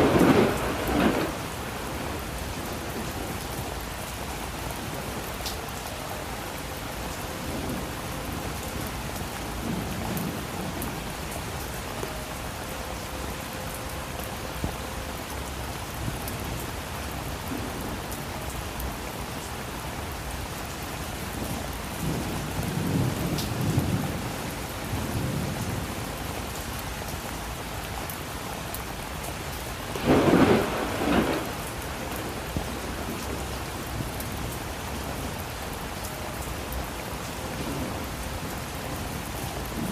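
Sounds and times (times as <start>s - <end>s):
thunder rumbling: 0.0s - 5.3s, 21.2s - 26.5s, 29.8s - 35.4s
steady rain falling: 0.0s - 39.9s.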